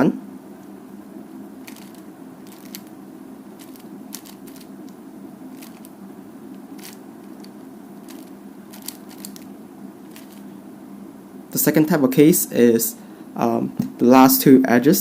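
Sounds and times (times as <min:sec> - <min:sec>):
steady low hum: 0:00.0 - 0:15.0
puzzle cube plastic clicks: 0:01.7 - 0:02.9, 0:03.6 - 0:04.7, 0:05.6 - 0:05.9, 0:06.8 - 0:07.5, 0:08.1 - 0:09.5, 0:10.1 - 0:10.4.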